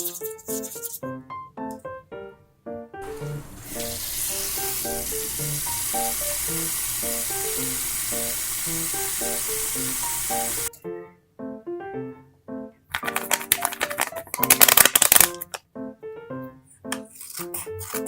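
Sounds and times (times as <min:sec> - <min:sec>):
loud sizzling hiss: 0:03.0 - 0:10.7.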